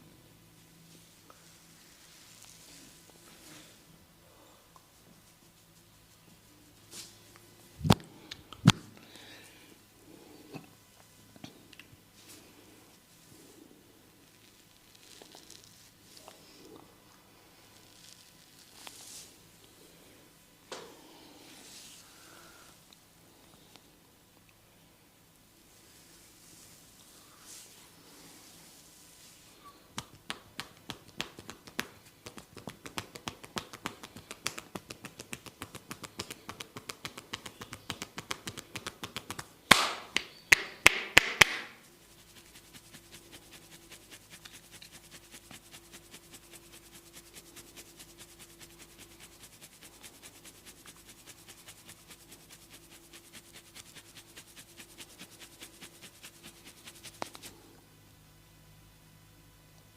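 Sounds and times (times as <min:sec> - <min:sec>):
hands tapping on head: 0:30.0 - 0:41.8
loud sharp cracks: 0:39.7 - 0:40.2.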